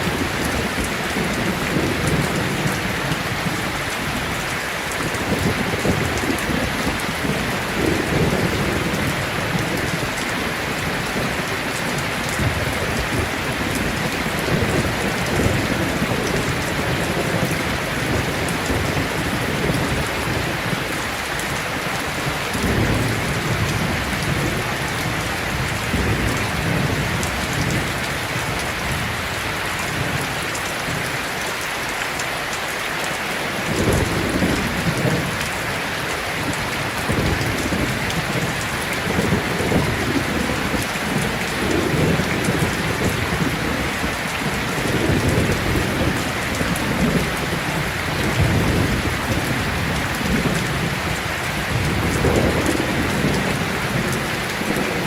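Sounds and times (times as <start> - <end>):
heavy rain falling: 0.0 - 55.0
rolling thunder: 36.4 - 55.0.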